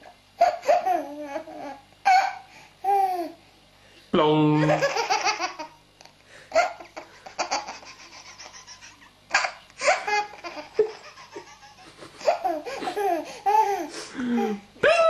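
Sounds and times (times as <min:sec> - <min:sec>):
baby laughing: 0:00.4 - 0:03.3, 0:04.6 - 0:05.8, 0:06.5 - 0:14.6.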